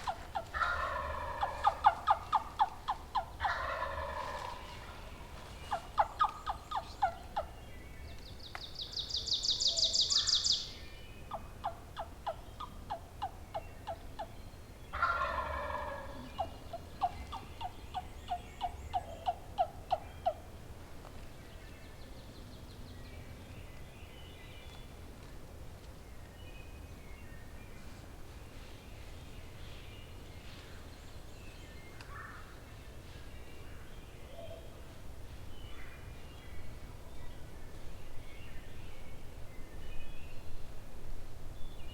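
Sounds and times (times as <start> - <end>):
sharp rhythmic turkey yelps: 0.0 - 4.6, 5.7 - 7.5, 11.3 - 14.3, 15.0 - 20.4
turkey gobbling: 0.0 - 5.0, 5.7 - 7.5, 15.0 - 20.4
faint birdsong: 0.0 - 25.1, 25.8 - 40.9.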